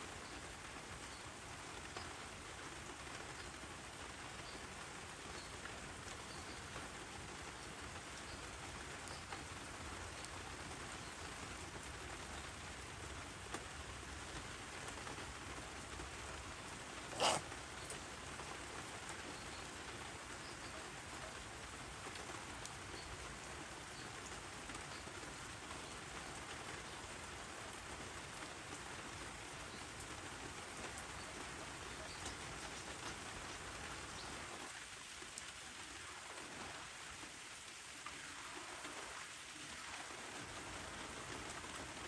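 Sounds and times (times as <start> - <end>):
rain pattering: 0.0 - 42.0.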